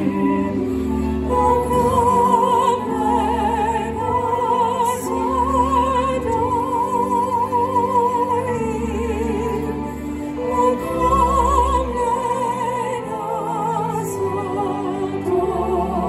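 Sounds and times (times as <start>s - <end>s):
operatic high voice singing: 0.0s - 16.0s.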